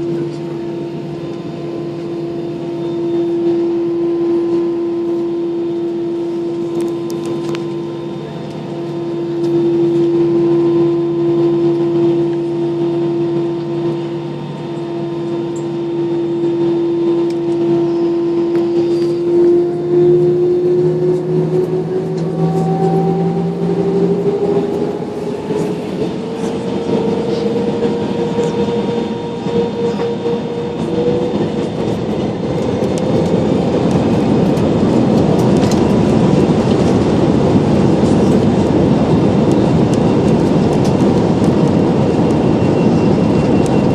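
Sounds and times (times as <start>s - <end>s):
jet engine whine: 0.0s - 43.9s
rushing roar: 17.0s - 43.4s.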